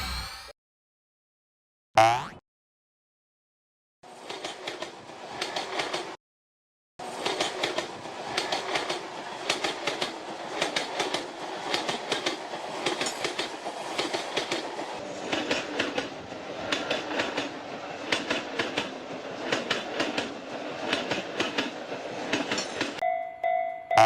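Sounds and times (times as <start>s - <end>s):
wheels clicking on rail joints: 4.1s - 6.2s, 7.0s - 23.6s
train rumbling past: 7.0s - 23.2s.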